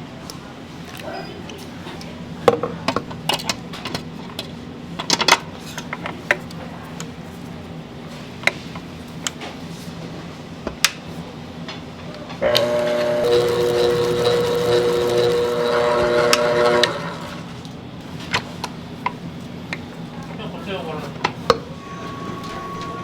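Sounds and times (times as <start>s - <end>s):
low machine hum: 11.3s - 23.0s
music: 21.8s - 23.0s.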